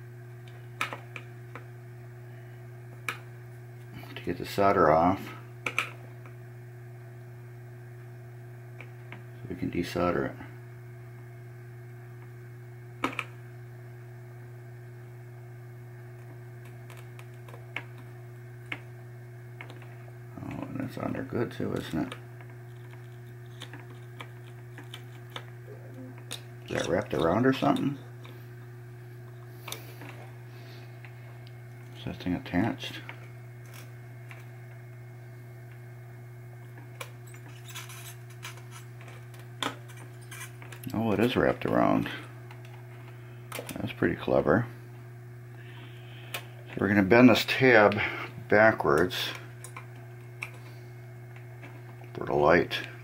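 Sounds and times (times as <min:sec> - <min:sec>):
low electrical hum: 0:00.0 - 0:53.0
metal parts clicking and rattling: 0:37.3 - 0:40.8.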